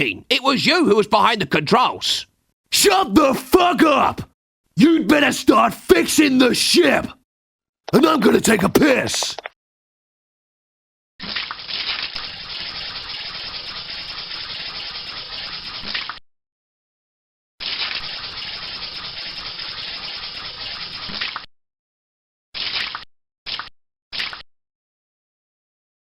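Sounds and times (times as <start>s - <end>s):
stream of liquid splashing: 11.2s - 16.2s, 17.6s - 21.4s.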